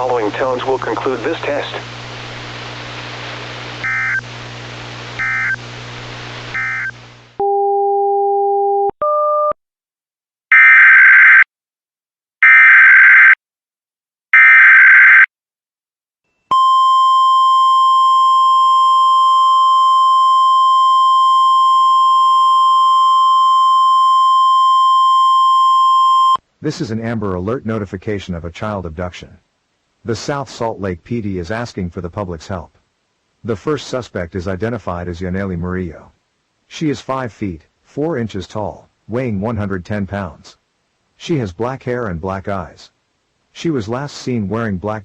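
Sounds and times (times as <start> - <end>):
receiver hiss: 0.0 - 7.4
loud data bursts: 3.7 - 7.2
data bursts: 3.8 - 4.3, 5.2 - 5.6, 6.5 - 7.0
steady warning alarm tone: 5.2 - 5.6, 6.6 - 6.9.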